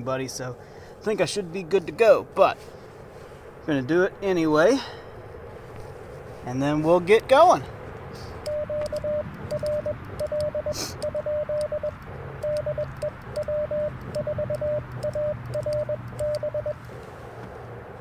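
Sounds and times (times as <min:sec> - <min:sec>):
faint clicks: 0:08.4 - 0:16.5
morse code tone: 0:08.4 - 0:16.8.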